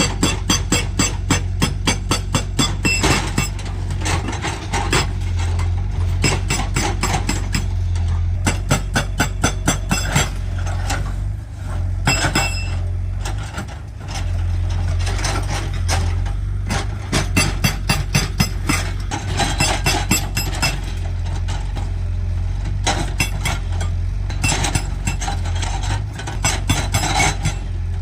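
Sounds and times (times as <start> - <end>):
excavator engine humming: 0.0 - 28.0
rapid sharp knocks and rattles: 17.1 - 21.0.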